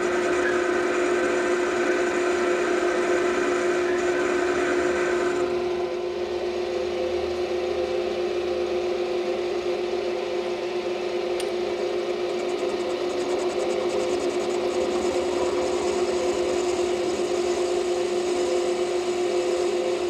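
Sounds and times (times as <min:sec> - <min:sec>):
electric motor humming: 0:00.0 - 0:05.5, 0:12.1 - 0:20.0
small click: 0:11.4 - 0:11.6.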